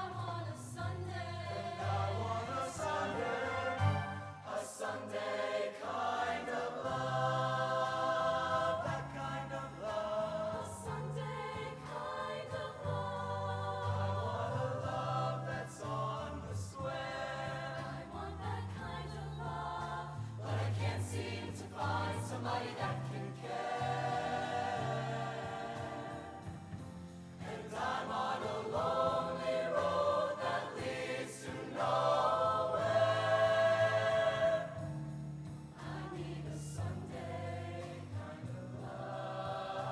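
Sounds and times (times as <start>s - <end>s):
choir singing in harmony: 0.0s - 39.9s
instrumental backing: 0.0s - 39.9s.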